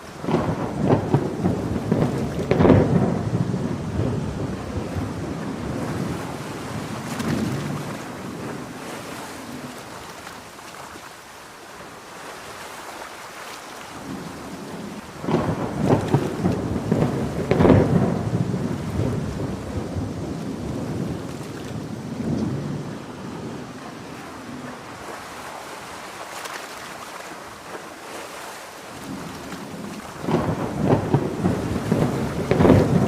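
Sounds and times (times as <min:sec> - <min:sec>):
thunder cracking and rumbling: 0:00.0 - 0:09.6, 0:14.0 - 0:25.1, 0:29.0 - 0:33.0
heavy rain hiss: 0:00.0 - 0:33.0.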